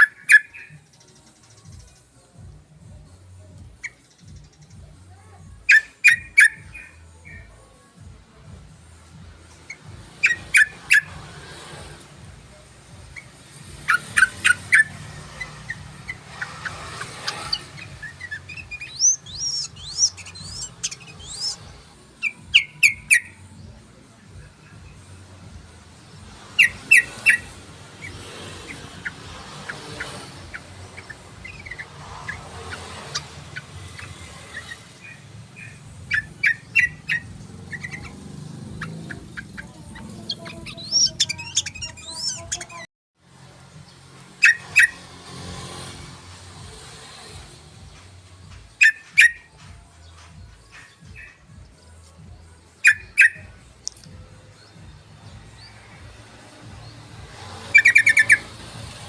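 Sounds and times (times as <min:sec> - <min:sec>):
bird song bright notes: 0:13.9 - 0:23.3.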